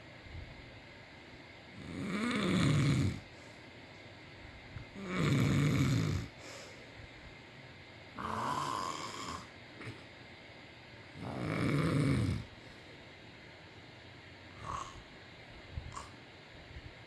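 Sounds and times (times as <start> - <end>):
person snoring: 1.8 - 3.3, 5.0 - 6.4, 8.2 - 10.0, 11.2 - 12.5, 14.6 - 15.1.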